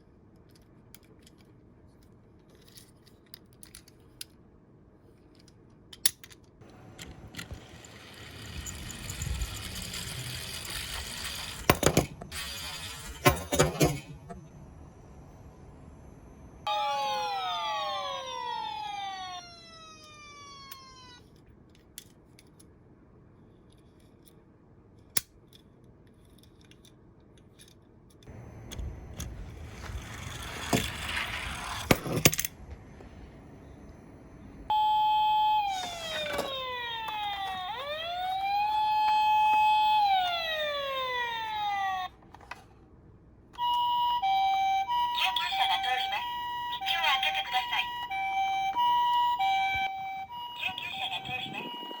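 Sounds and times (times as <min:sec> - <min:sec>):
toy car rattling down a slope: 0:07.0 - 0:14.0, 0:28.7 - 0:32.5
toy siren wailing: 0:16.6 - 0:21.3, 0:34.7 - 0:42.2, 0:43.6 - 0:52.0.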